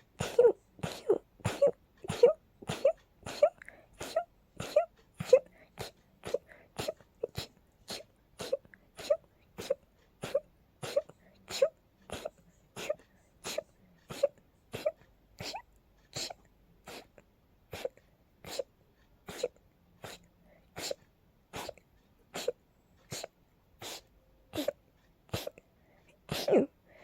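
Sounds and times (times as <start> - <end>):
person sneezing rapidly: 0.2 - 15.6, 19.3 - 20.2, 20.8 - 21.0, 21.6 - 25.6, 26.3 - 26.7.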